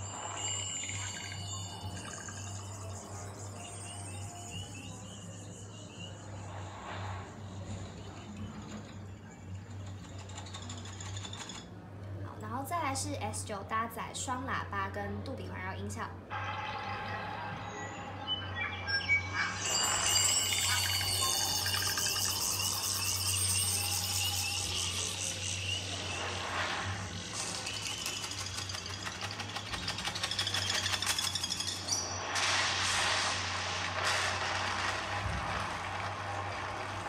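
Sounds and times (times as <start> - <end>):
music with sound effects: 16.3 - 37.0.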